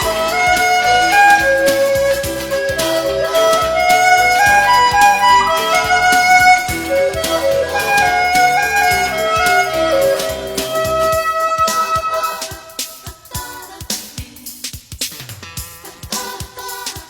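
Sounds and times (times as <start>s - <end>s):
melody with light beat: 0.0s - 12.9s.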